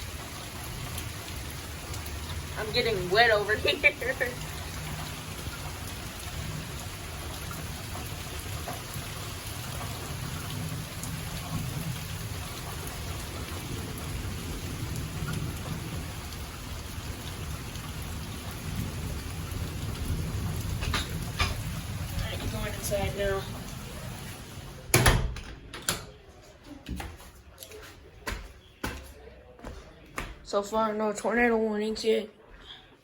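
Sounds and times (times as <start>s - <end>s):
heavy rain: 0.0s - 25.2s
low thunder rumble: 5.9s - 24.9s.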